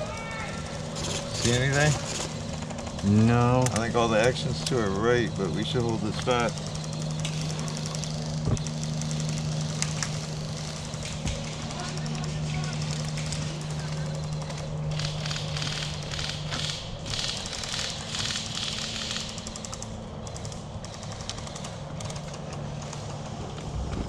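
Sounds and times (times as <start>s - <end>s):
steady low hum: 0.0s - 24.0s
airsoft guns firing in bursts: 5.8s - 22.3s.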